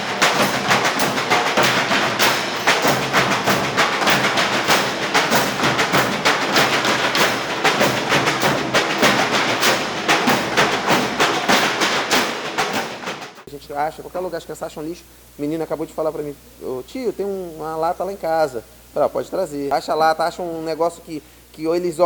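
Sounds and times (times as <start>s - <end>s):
drums beating fast rhythm: 0.0s - 13.5s.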